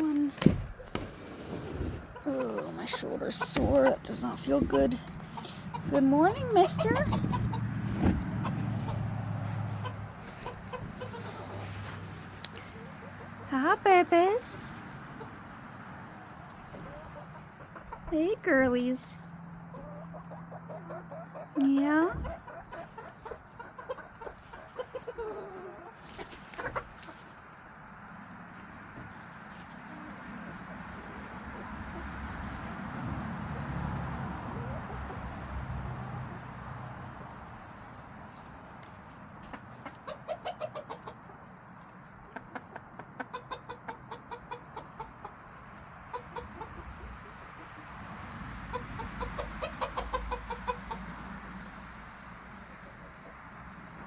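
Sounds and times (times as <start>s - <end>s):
hens clucking: 1.8s - 28.1s, 34.4s - 51.4s.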